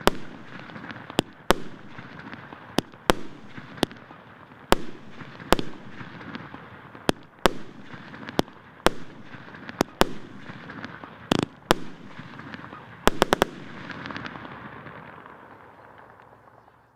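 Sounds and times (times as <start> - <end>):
firework bangs: 0.0 - 16.6.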